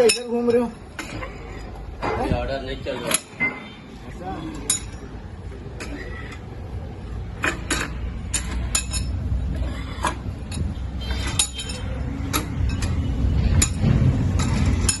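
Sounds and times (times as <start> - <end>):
metallic clinks and taps: 7.4 - 9.2.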